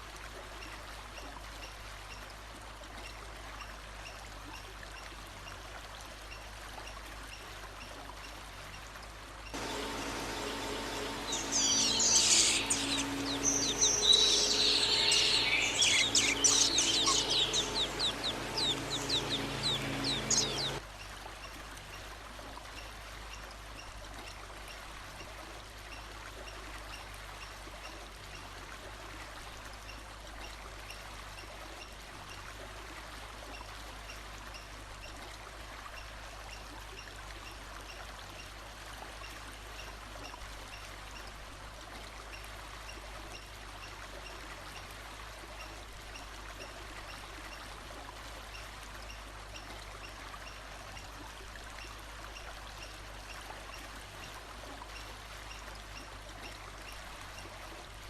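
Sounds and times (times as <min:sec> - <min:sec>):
running water: 0:00.0 - 0:58.0
songbird singing: 0:09.6 - 0:20.8.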